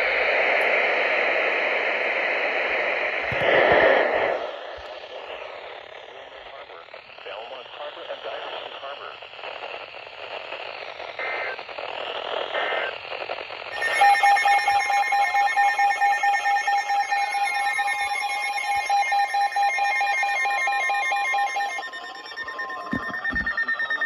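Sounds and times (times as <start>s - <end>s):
radio static: 0.0s - 24.0s
data tone bursts: 5.0s - 24.0s
electronic alert tones: 13.7s - 24.0s.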